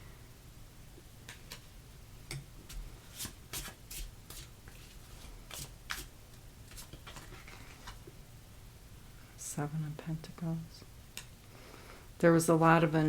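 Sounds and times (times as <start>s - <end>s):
cards being shuffled: 2.7s - 6.1s, 6.7s - 8.0s.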